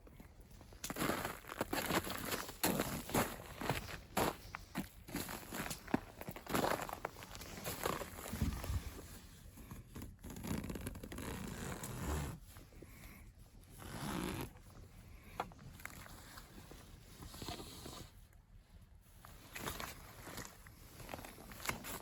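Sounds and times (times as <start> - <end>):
tent zipper being pulled: 10.2 - 12.4, 13.8 - 14.6.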